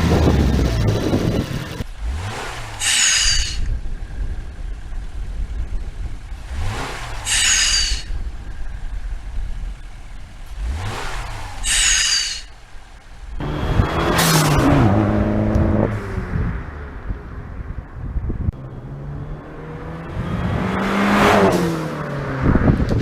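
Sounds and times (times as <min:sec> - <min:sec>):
car engine revving: 0:00.0 - 0:23.0
blow-off hiss with falling whistle: 0:07.3 - 0:08.1.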